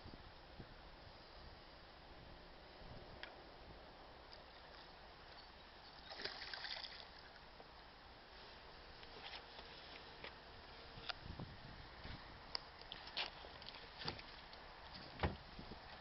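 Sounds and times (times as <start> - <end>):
water splash: 6.0 - 7.2.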